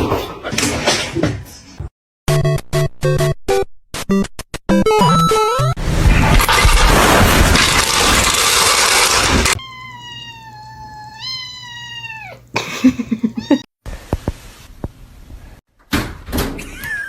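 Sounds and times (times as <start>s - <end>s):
loud harsh noise: 5.8s - 9.6s
cat meowing: 9.6s - 12.5s.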